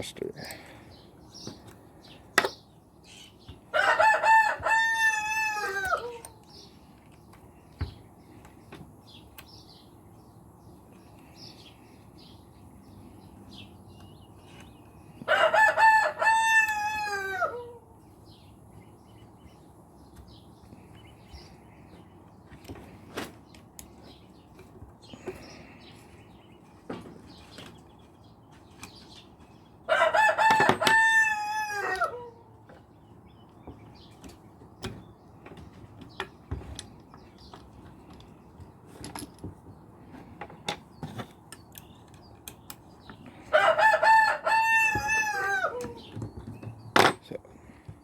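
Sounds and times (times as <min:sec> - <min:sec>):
rooster crowing: 0:03.7 - 0:06.4, 0:15.3 - 0:18.0, 0:29.9 - 0:32.6, 0:43.5 - 0:46.1.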